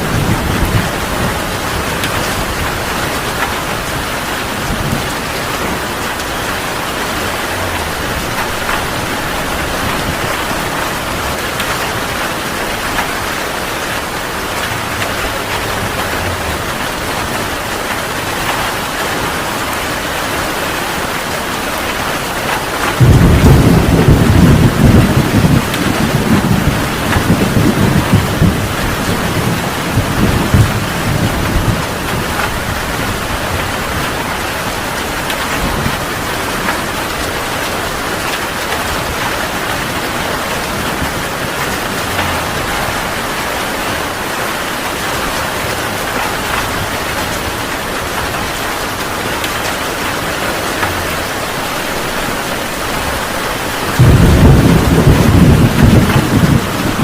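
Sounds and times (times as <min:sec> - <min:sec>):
deep thunder rumble: 0:00.0 - 0:19.0, 0:22.6 - 0:37.3, 0:50.8 - 0:57.0
heavy rain falling: 0:00.0 - 0:57.0.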